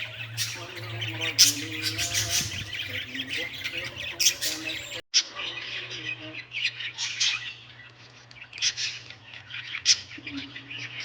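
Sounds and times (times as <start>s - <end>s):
small birds chirping: 0.0s - 5.0s.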